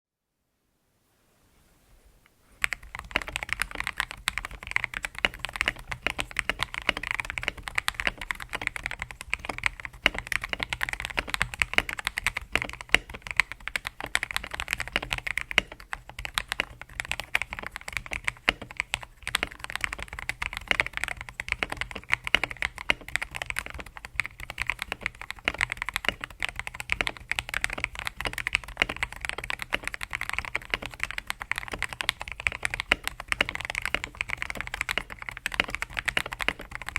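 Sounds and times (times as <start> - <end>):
mechanical keyboard keystroke clacks: 2.6 - 36.9.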